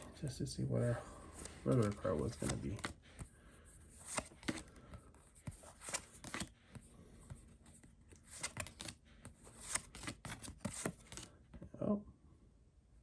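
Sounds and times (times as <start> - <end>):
cards sliding and tapping: 1.3 - 3.3, 3.9 - 11.3.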